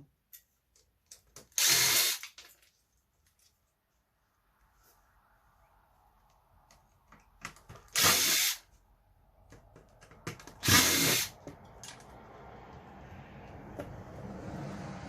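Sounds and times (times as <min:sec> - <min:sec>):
cordless screwdriver whirring: 0:07.9 - 0:08.6, 0:10.6 - 0:11.4
handling clicks and knocks: 0:09.4 - 0:10.6, 0:11.4 - 0:12.2.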